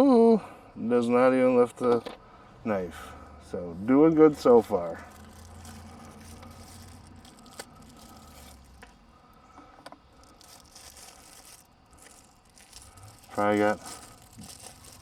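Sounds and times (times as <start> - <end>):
soft rustling and scraping: 4.0 - 15.0.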